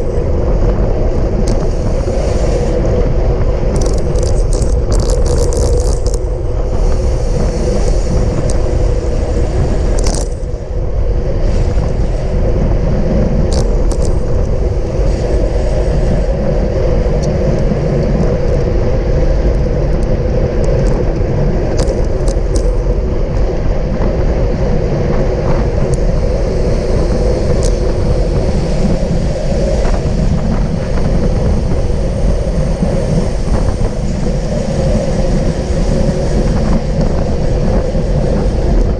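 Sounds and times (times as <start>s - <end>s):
bicycle clicks and rattles: 0.0s - 2.9s, 3.7s - 9.1s, 9.8s - 10.7s, 13.4s - 15.2s, 19.4s - 23.7s, 26.9s - 35.0s
road noise: 0.0s - 38.9s
wind rush: 0.0s - 38.9s.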